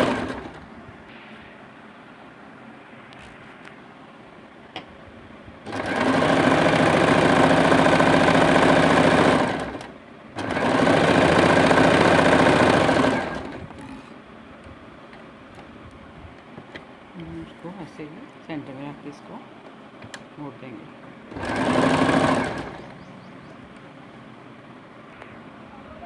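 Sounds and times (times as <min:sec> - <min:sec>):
sewing machine stitching: 0:00.0 - 0:00.6, 0:05.6 - 0:14.1, 0:21.3 - 0:22.9.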